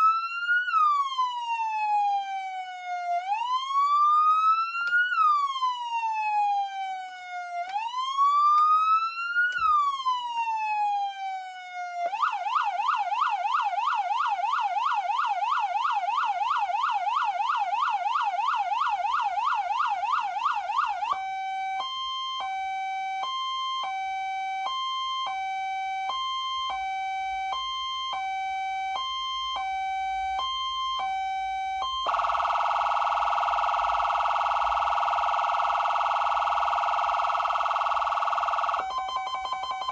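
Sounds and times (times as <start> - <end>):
electronic siren cycling tones: 12.1 - 39.9.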